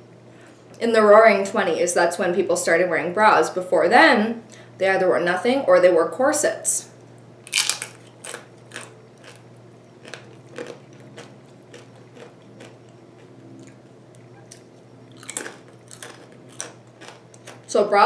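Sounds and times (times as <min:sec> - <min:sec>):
person chewing crunchy food: 0:07.5 - 0:17.7.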